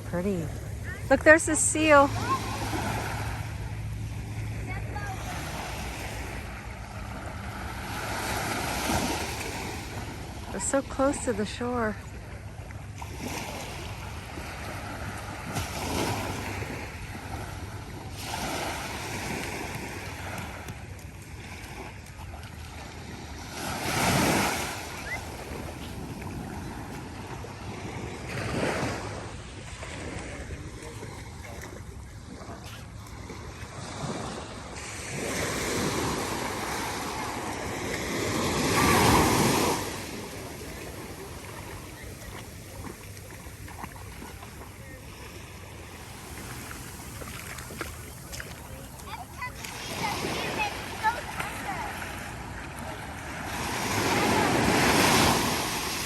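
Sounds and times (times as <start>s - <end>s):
ocean surf breaking: 0.0s - 12.4s, 23.1s - 31.2s, 33.4s - 56.0s.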